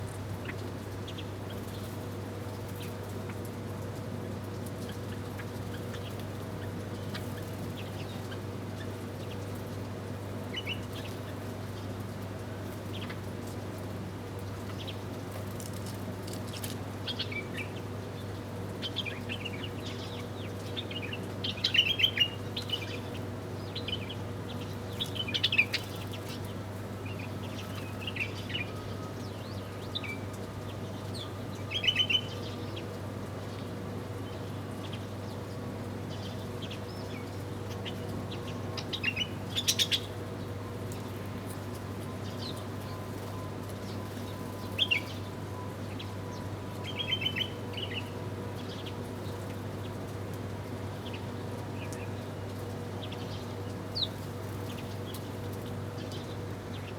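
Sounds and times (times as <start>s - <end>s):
small birds chirping: 15.6s - 33.6s, 34.2s - 41.0s, 51.0s - 56.9s.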